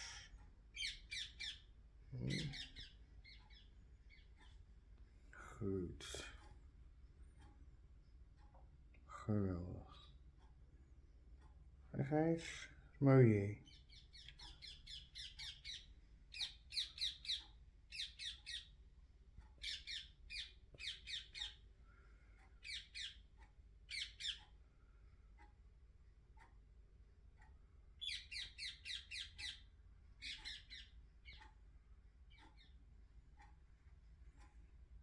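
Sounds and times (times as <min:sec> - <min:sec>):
bird calling in harsh notes: 0:00.0 - 0:04.3.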